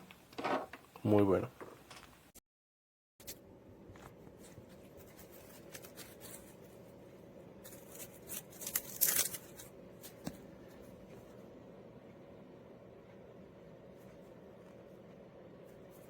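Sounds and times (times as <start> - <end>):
low steady hum: 3.2 - 16.0
crackly rustle: 4.0 - 6.9, 7.6 - 11.4.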